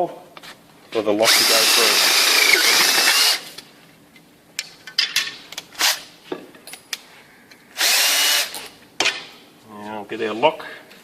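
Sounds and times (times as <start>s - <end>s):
power drill: 1.2s - 3.5s, 7.8s - 8.6s.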